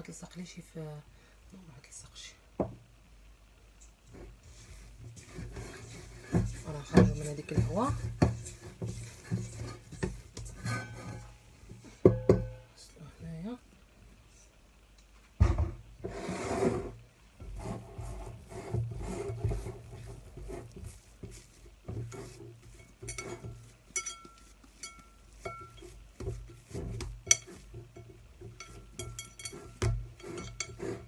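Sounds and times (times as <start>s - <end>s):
hands kneading sticky dough: 4.1s - 12.0s, 17.5s - 31.0s.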